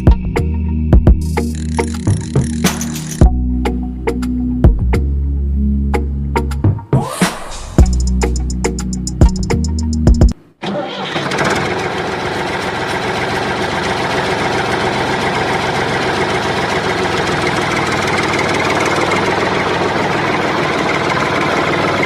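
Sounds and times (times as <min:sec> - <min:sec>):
engine running steadily: 0:10.9 - 0:22.0.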